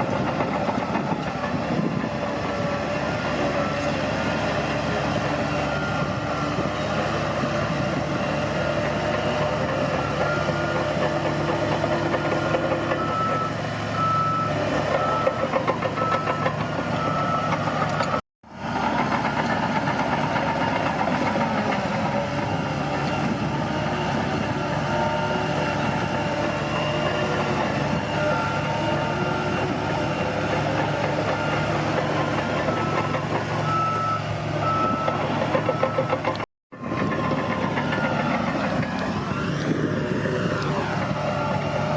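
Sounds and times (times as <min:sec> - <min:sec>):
bulldozer diesel engine running: 0:00.0 - 0:41.9
reversing alarm beeping: 0:03.4 - 0:11.1, 0:11.8 - 0:18.2, 0:22.2 - 0:39.6.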